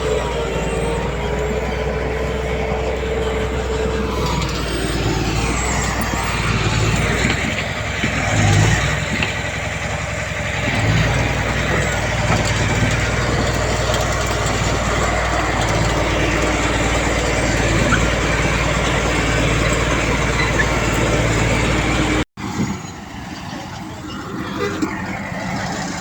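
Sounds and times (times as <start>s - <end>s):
diesel engine of heavy machinery: 0.0s - 26.0s.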